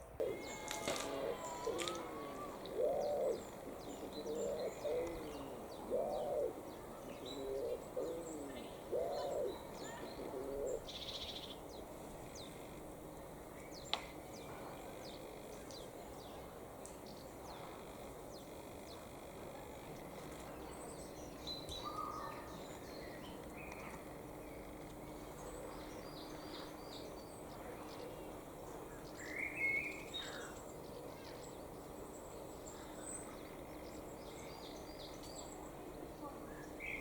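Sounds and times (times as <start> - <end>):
songbirds chirping: 0.0 - 37.0
pigeon cooing: 0.1 - 6.6, 7.3 - 10.9.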